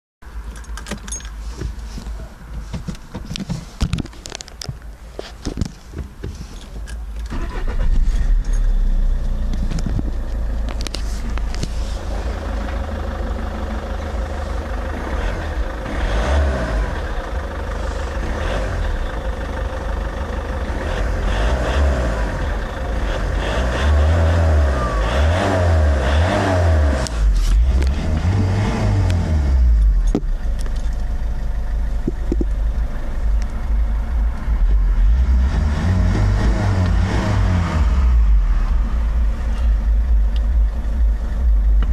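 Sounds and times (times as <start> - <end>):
diesel engine revving: 7.2 - 41.9.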